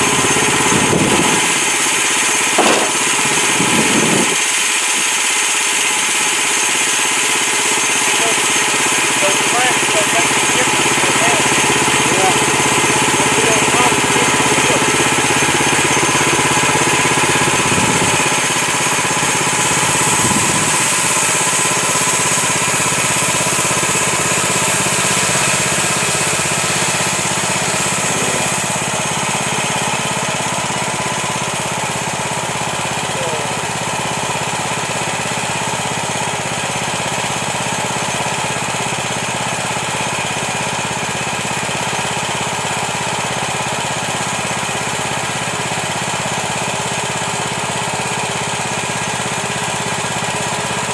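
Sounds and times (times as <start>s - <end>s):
band saw blade cutting log: 0.0s - 29.8s
small engine running: 0.0s - 50.9s.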